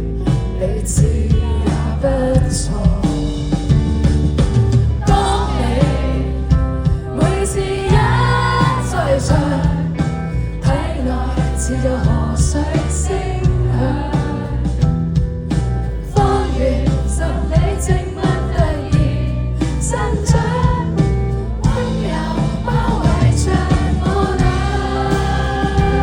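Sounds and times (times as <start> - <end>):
indie pop band playing: 0.0 - 26.0.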